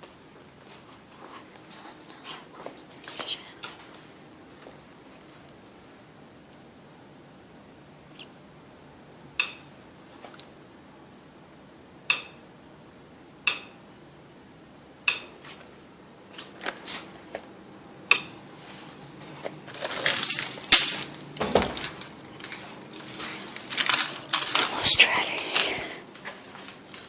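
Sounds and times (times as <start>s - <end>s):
jingling clatter: 19.8s - 21.1s, 22.9s - 27.0s.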